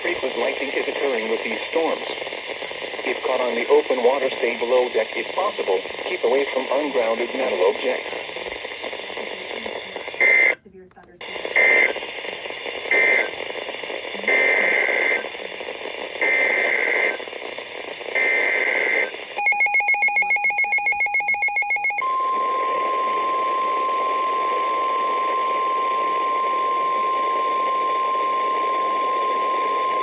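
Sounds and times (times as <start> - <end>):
faint radio hiss: 0.0 - 19.4, 22.2 - 30.0
steady alarm tone: 19.4 - 30.0.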